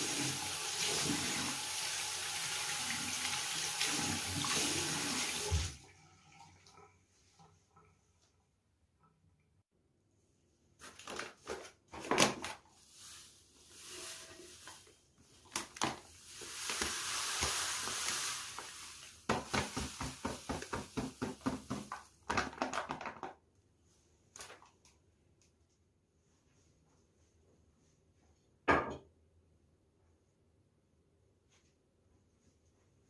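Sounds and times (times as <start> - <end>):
scrubbing strokes: 12.8 - 15.4
hiss: 16.2 - 21.6.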